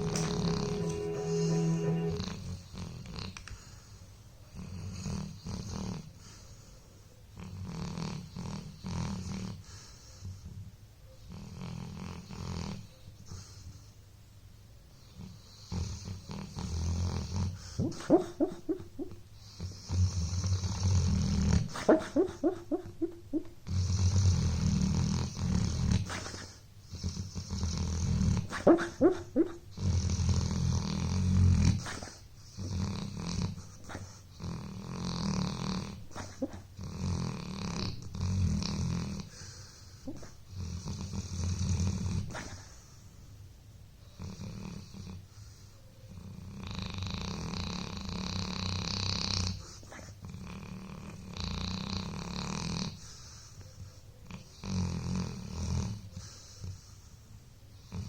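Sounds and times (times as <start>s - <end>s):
dog snoring: 4.6s - 6.2s, 7.4s - 10.6s, 11.2s - 13.4s, 15.0s - 22.8s, 23.6s - 28.6s, 29.4s - 42.7s, 44.0s - 45.2s, 46.1s - 53.5s, 54.2s - 56.9s, 57.8s - 58.0s.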